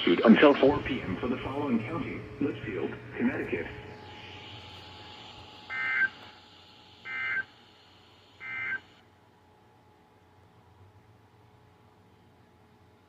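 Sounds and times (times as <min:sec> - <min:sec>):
receiver hiss: 0:00.0 - 0:09.1
data-tone bursts: 0:04.3 - 0:06.3, 0:07.0 - 0:07.5, 0:08.4 - 0:09.0.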